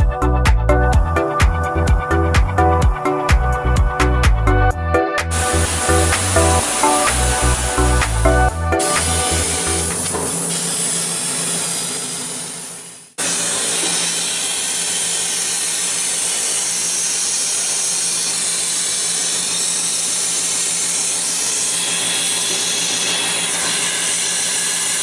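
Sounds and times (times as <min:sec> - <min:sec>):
electric air compressor running: 0:00.9 - 0:04.6, 0:05.2 - 0:25.0
loud hiss of air: 0:05.3 - 0:15.2.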